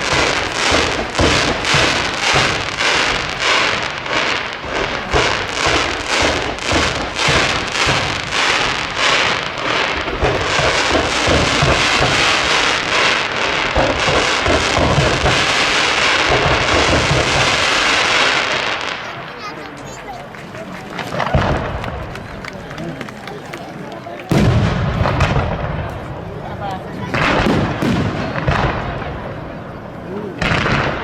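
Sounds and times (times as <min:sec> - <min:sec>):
deep booms of bursting shells: 0:00.0 - 0:18.9, 0:24.3 - 0:25.9, 0:27.1 - 0:29.3, 0:30.4 - 0:31.0
fireworks crackling bangs: 0:00.0 - 0:31.0.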